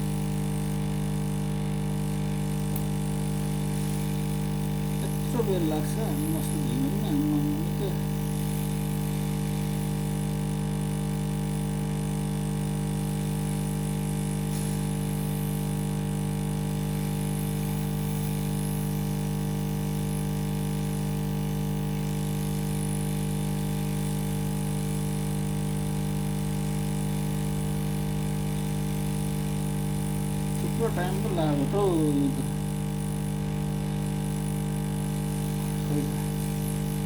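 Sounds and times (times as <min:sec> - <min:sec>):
hot air station blowing hum: 0:02.0 - 0:11.3, 0:13.8 - 0:15.5, 0:16.7 - 0:18.8, 0:30.1 - 0:33.2, 0:34.2 - 0:37.0.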